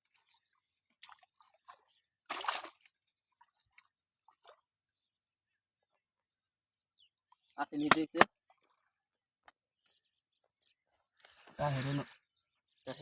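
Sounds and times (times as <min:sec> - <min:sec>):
water and mud squelching: 0:00.0 - 0:04.7.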